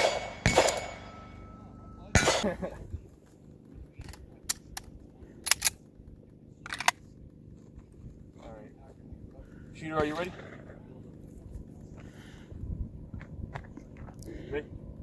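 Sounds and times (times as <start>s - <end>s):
loud pistol shot: 0.0s - 1.2s, 2.2s - 2.6s.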